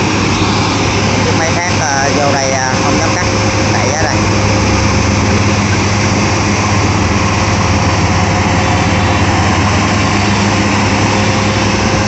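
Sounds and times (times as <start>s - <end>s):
combine harvester engine drone: 0.0s - 12.0s.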